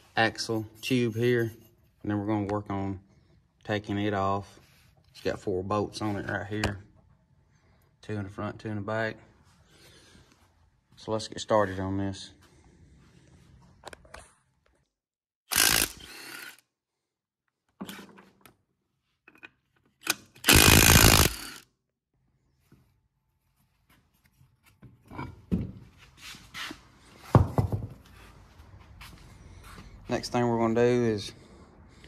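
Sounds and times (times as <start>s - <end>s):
impact wrench bursts: 15.5s - 16.6s, 20.0s - 21.6s.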